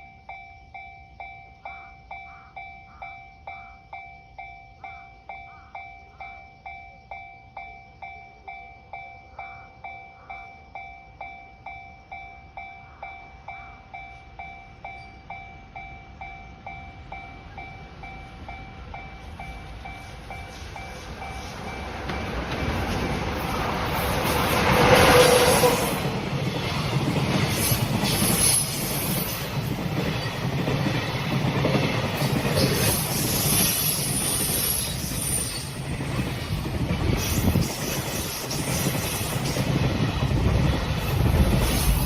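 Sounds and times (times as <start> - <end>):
level crossing warning bell: 0.0 - 27.4
approaching train noise: 0.0 - 42.0.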